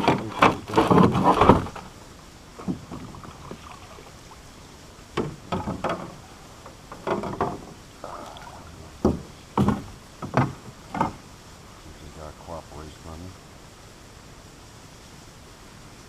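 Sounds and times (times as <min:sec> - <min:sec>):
knocks against a kayak: 0:00.0 - 0:01.9, 0:02.6 - 0:03.6, 0:05.2 - 0:06.2, 0:06.9 - 0:07.8, 0:09.0 - 0:11.2
low steady background: 0:00.0 - 0:16.0.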